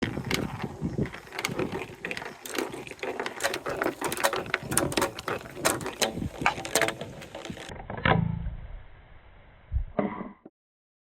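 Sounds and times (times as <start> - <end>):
marbles clacking on plastic track: 0.0 - 7.7.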